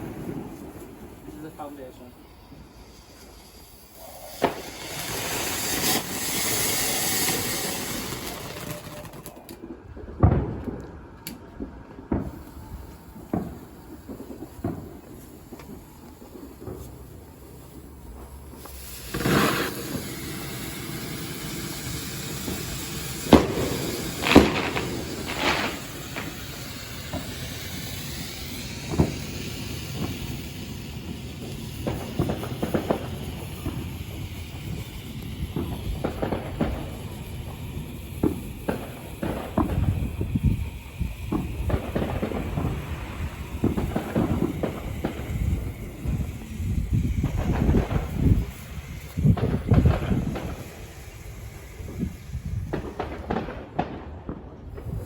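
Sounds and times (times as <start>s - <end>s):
firework bangs: 0.0s - 55.0s
firework hissing rush: 0.0s - 55.0s
wind on microphone rumbling: 39.4s - 53.6s.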